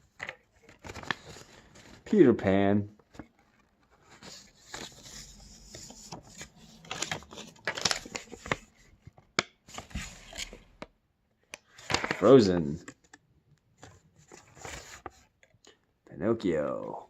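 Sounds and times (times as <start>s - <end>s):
paper rustling and crinkling: 0.0s - 2.2s, 3.0s - 10.9s, 11.5s - 13.2s, 13.8s - 15.3s.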